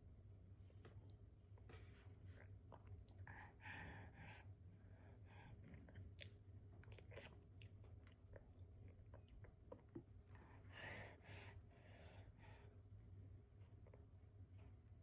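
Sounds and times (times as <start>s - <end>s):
baby chewing and smacking: 5.8s - 10.1s.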